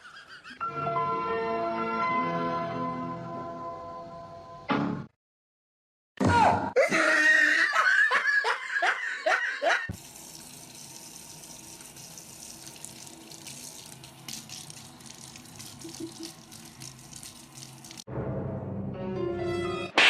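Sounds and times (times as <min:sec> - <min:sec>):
person laughing: 0:06.8 - 0:09.9, 0:15.7 - 0:16.4
water running from a tap: 0:09.9 - 0:18.1.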